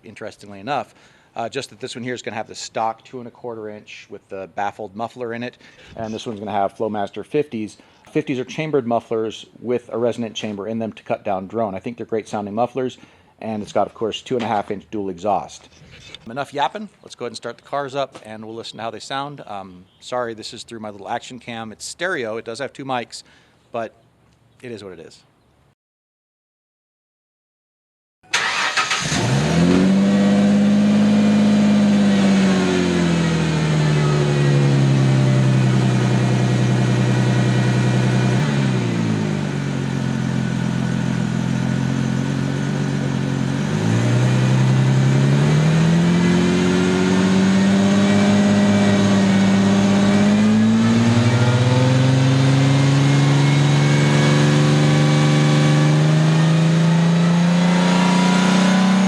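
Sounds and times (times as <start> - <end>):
car engine fast-idling: 30.3 - 46.0.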